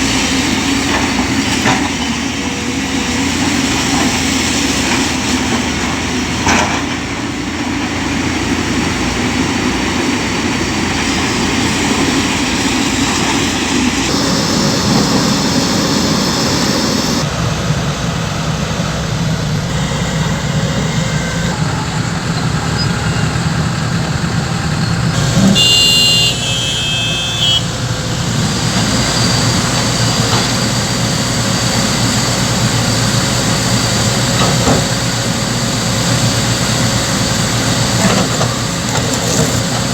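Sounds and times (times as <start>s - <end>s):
excavator diesel engines under load: 0.0s - 39.9s
hydraulic working noise: 0.0s - 39.9s
short high beeping tone: 14.1s - 17.2s, 19.7s - 21.8s.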